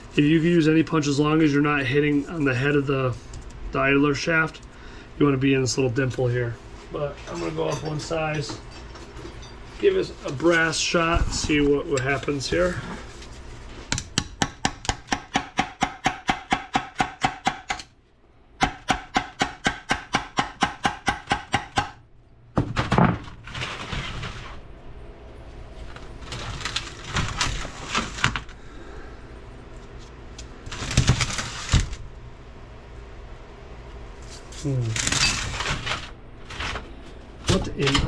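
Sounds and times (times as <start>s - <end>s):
hammer striking metal punch: 13.9s - 17.8s
metal parts clunking: 22.6s - 24.6s, 26.2s - 28.6s, 34.8s - 38.0s.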